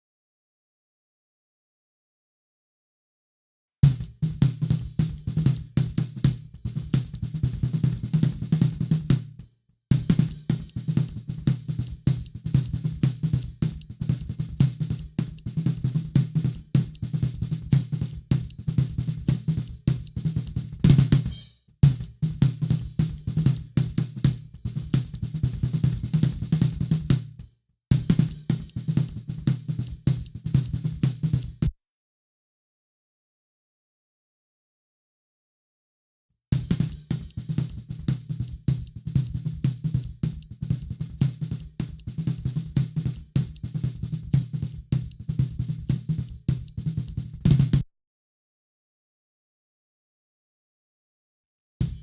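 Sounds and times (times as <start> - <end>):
drum kit groove: 3.8 - 31.7, 36.6 - 47.8.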